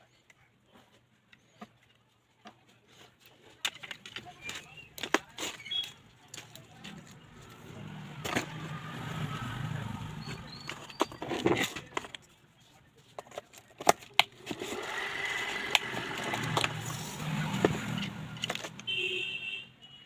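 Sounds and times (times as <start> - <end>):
hard parts clicking and knocking: 3.4 - 8.8, 10.1 - 12.3, 13.1 - 19.0.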